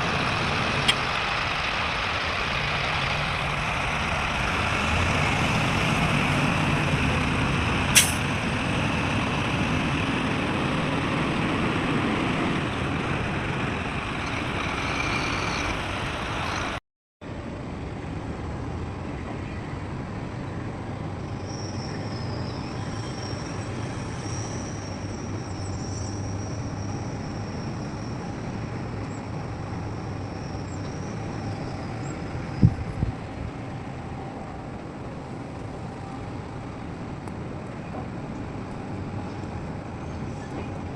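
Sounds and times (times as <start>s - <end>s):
diesel construction machinery running: 0.0s - 16.8s
sharp click: 8.0s - 8.3s.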